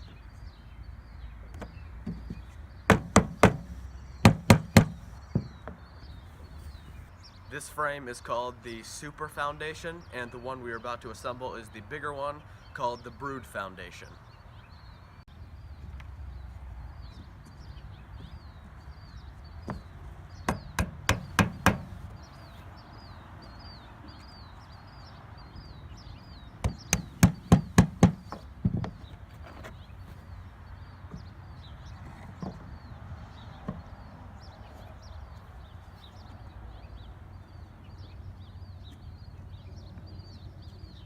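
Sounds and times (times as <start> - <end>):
mallet knocking wooden frame: 2.9 - 5.8, 20.5 - 21.9, 26.6 - 29.0.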